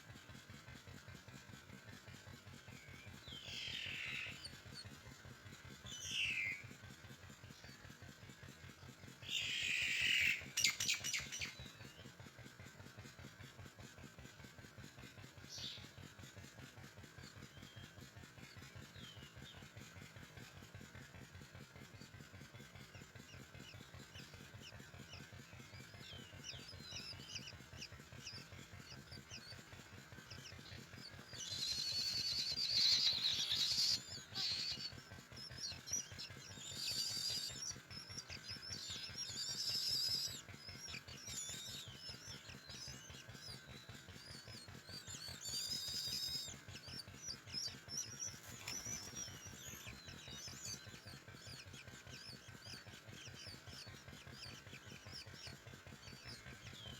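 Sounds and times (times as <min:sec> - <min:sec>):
nestlings chirping: 0:22.7 - 0:56.9
harsh begging calls: 0:24.0 - 0:56.9.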